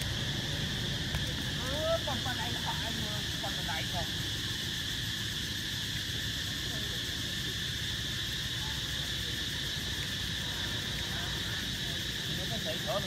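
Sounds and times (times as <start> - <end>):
insects buzzing trill: 0.0 - 13.0.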